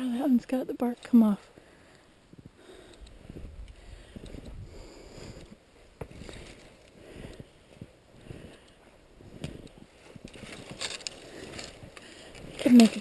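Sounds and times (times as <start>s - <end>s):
twigs crackling: 6.0s - 13.0s
footsteps through brush: 8.8s - 13.0s.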